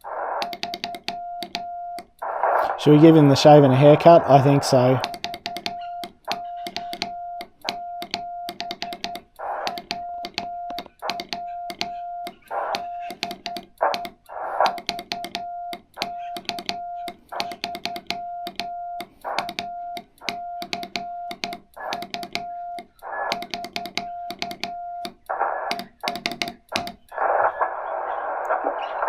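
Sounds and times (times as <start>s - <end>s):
radio receiver hiss: 0.0s - 0.7s, 2.0s - 5.1s, 8.8s - 10.0s, 12.3s - 14.9s, 25.2s - 29.0s
morse code beeping: 0.3s - 27.2s
morse key clicks: 5.0s - 27.1s.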